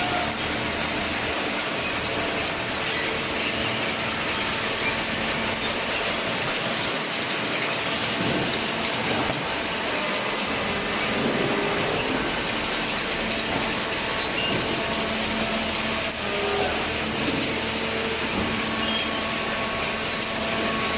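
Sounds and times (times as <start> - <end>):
baler machine running: 0.0 - 20.9.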